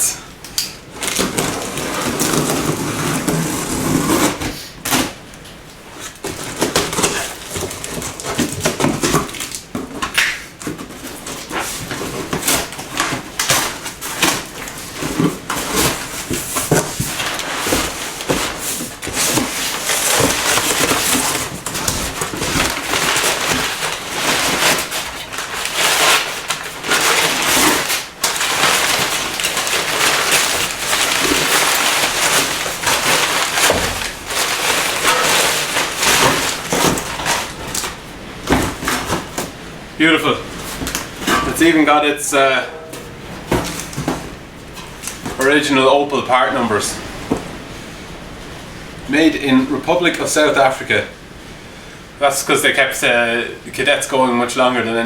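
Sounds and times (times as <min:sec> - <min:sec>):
cardboard rustling and tearing: 0:00.9 - 0:41.8, 0:43.1 - 0:45.8.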